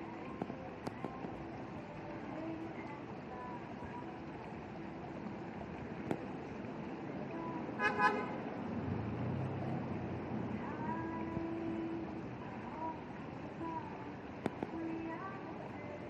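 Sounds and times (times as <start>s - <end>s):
traffic noise: 0.0s - 16.0s
vehicle horn toots: 7.8s - 8.4s.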